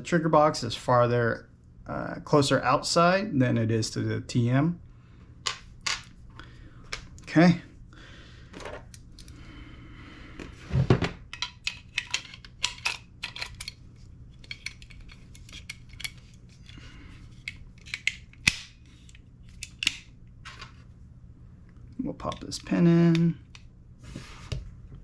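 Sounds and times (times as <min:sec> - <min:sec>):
small metal parts clicking: 0:11.3 - 0:13.8.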